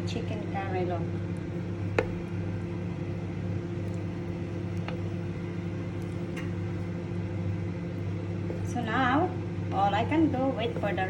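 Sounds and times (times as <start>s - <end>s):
machine humming: 0.0s - 11.0s.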